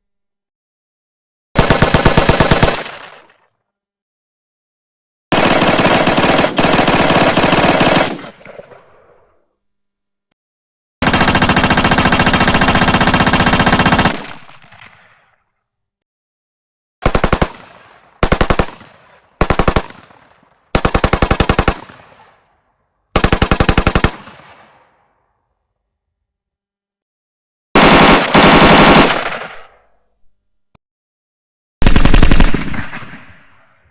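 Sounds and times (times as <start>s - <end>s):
machine gun bursts: 5.3s - 8.2s, 27.8s - 29.4s, 31.8s - 32.6s.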